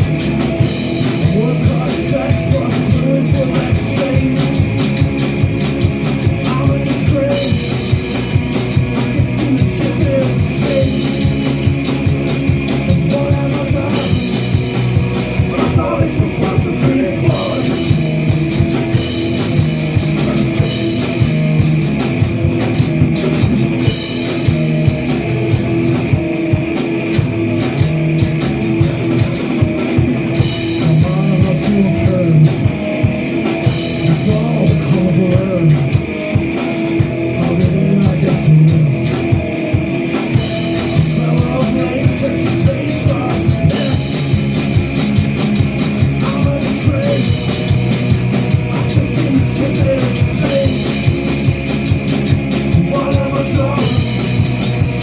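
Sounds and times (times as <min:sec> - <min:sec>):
bass guitar: 0:00.0 - 0:55.0
distorted electric guitars: 0:00.0 - 0:55.0
drum kit beating fast rhythm: 0:00.0 - 0:55.0
person singing: 0:01.0 - 0:04.8, 0:06.4 - 0:08.0, 0:09.0 - 0:11.6, 0:12.9 - 0:14.6, 0:15.5 - 0:18.3, 0:29.5 - 0:33.2, 0:34.0 - 0:36.2, 0:37.3 - 0:39.2, 0:40.7 - 0:44.2, 0:46.1 - 0:47.6, 0:48.7 - 0:51.1, 0:52.7 - 0:54.4.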